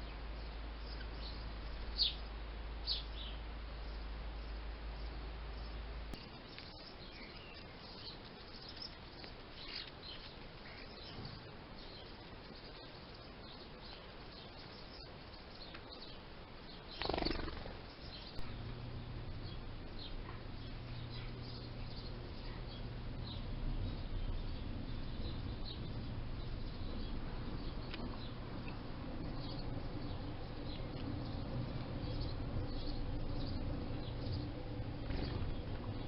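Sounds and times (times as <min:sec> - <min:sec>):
low steady hum: 0:00.0 - 0:36.0
small birds chirping: 0:00.0 - 0:36.0.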